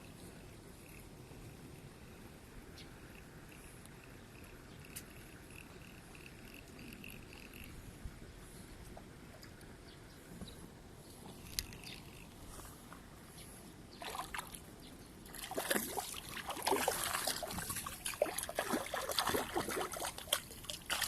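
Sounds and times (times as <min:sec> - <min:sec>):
fish thrashing water splashing: 0:15.3 - 0:21.0.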